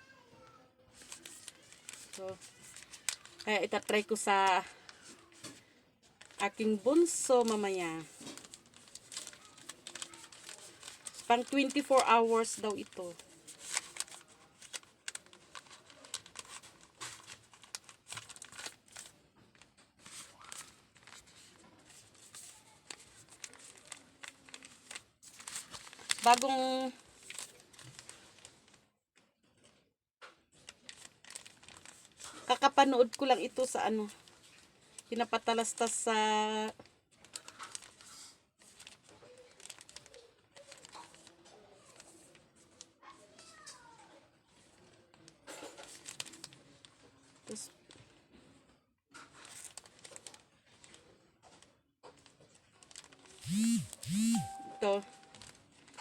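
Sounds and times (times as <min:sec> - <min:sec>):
packaging crinkling: 0:01.0 - 0:05.6, 0:06.2 - 0:28.8, 0:30.6 - 0:33.6, 0:37.2 - 0:41.4, 0:49.3 - 0:51.0, 0:52.8 - 0:56.0.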